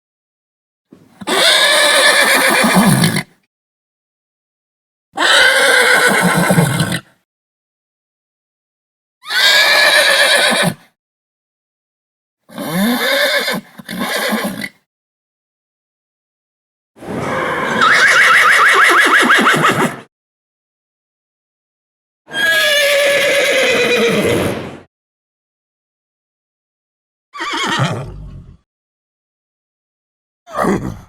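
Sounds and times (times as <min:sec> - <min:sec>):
horse whinnying: 0:01.2 - 0:03.3, 0:05.2 - 0:07.1, 0:09.2 - 0:10.8, 0:12.5 - 0:14.7, 0:17.2 - 0:20.1, 0:22.3 - 0:24.6, 0:27.4 - 0:28.6.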